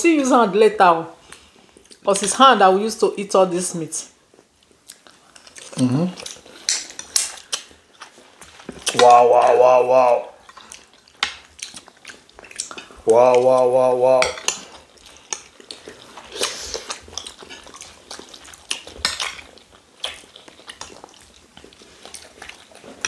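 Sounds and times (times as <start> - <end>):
person exclaiming: 8.9 - 10.4, 13.1 - 14.3
spoons clinking on plates: 14.2 - 14.7.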